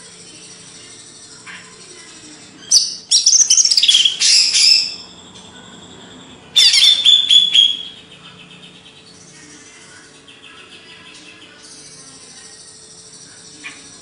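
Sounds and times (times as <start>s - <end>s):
bird singing whistled notes: 2.7s - 8.0s.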